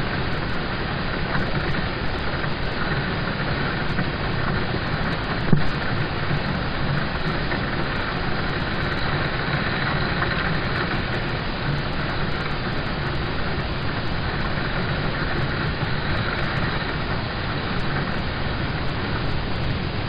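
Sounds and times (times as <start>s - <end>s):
rain on a car roof from inside: 0.0s - 20.0s.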